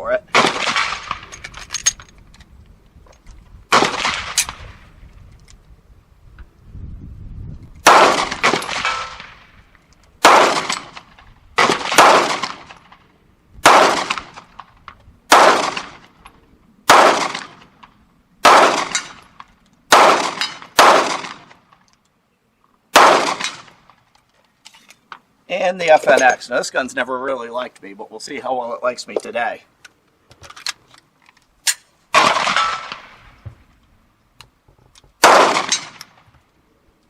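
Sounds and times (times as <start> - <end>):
pistol shots: 0.3 - 1.3, 7.8 - 9.4, 10.2 - 13.0, 13.6 - 14.5, 15.3 - 16.0, 16.9 - 17.6, 18.4 - 19.2, 19.9 - 21.6, 22.9 - 23.9, 31.7 - 33.2, 35.2 - 36.2.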